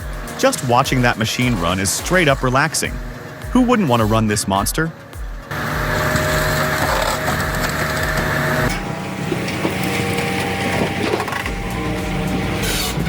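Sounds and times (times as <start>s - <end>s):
machine engine hum: 0.0s - 13.0s
wood crushing and splintering: 5.5s - 11.6s.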